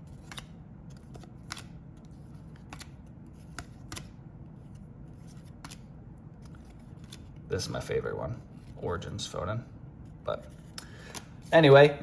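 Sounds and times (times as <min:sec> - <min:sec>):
trading cards flipped: 0:00.1 - 0:07.5, 0:10.0 - 0:11.5
cards snapping clicks: 0:00.2 - 0:01.8, 0:02.6 - 0:04.2, 0:05.6 - 0:05.8.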